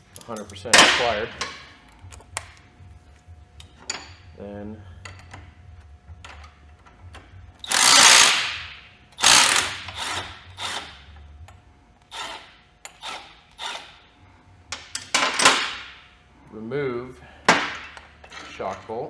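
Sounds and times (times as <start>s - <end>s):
ratcheting tool: 7.1s - 11.1s, 12.1s - 14.0s.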